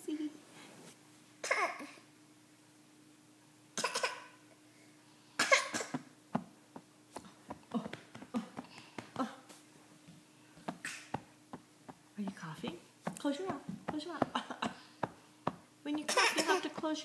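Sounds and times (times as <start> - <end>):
toddler coughing: 1.4 - 2.0, 3.8 - 4.4, 5.4 - 6.1, 10.8 - 11.2, 16.0 - 16.8.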